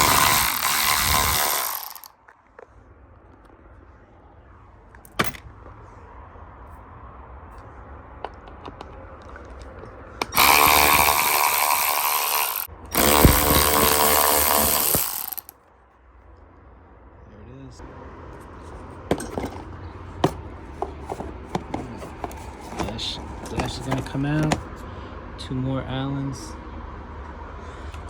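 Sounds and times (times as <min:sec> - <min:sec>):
cordless power driver spinning: 0:00.0 - 0:02.1, 0:10.2 - 0:15.5.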